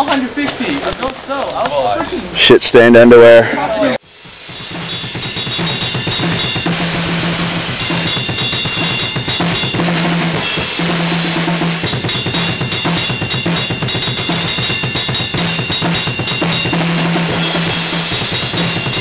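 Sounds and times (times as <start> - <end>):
fast drum-kit beat: 4.2 - 19.0.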